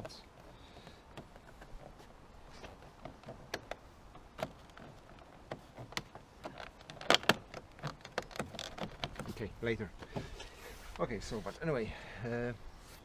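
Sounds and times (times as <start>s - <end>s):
plastic trim clicks and knocks: 3.0s - 9.4s.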